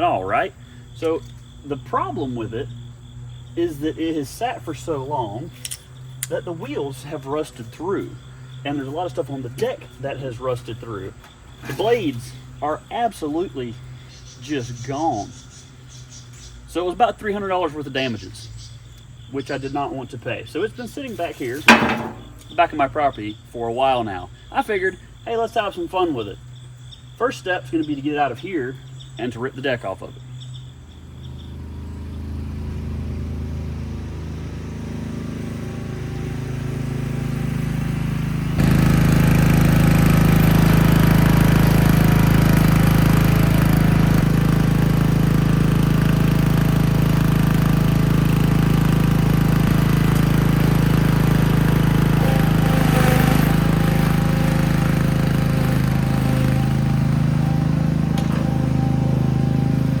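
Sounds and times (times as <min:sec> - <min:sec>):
vehicle engine running: 0:17.6 - 0:22.7, 0:28.8 - 1:00.0.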